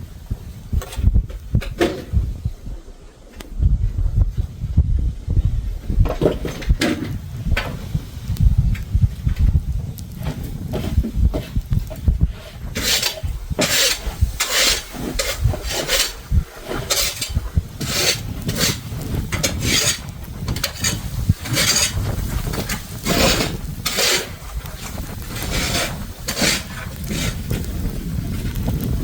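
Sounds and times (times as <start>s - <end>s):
snow shovel scraping snow: 12.3s - 28.9s.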